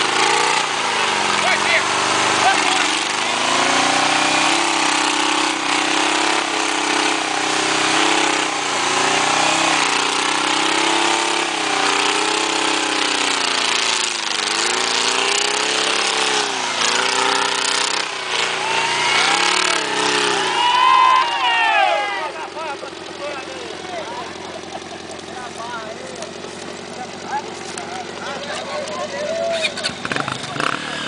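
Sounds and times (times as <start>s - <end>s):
vehicle engine revving: 0.0s - 31.0s.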